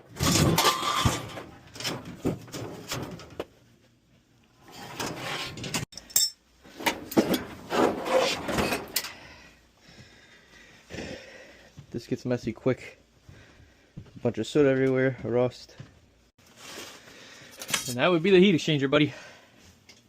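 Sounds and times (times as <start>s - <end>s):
sheet metal scraping and clattering: 0.0s - 3.4s, 4.6s - 5.9s, 6.8s - 9.1s.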